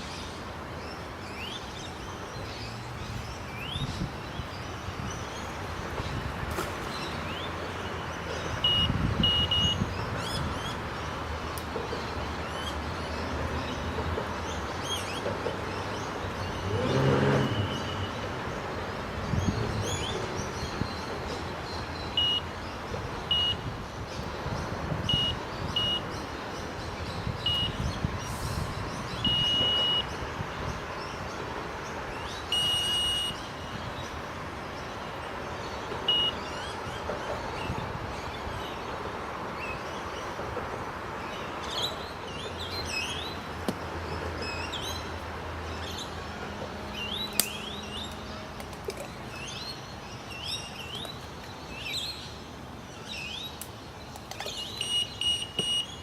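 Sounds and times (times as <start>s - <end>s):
bite alarm short beeps: 8.6s - 9.8s, 23.3s - 23.6s, 25.1s - 26.0s, 29.2s - 30.1s, 32.5s - 33.4s, 36.1s - 36.4s, 54.8s - 55.9s.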